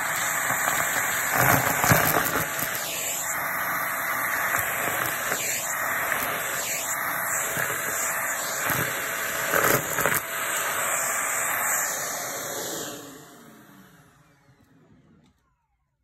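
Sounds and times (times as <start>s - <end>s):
motor whine winding down: 0.0s - 15.6s
vacuum cleaner running: 0.0s - 15.6s.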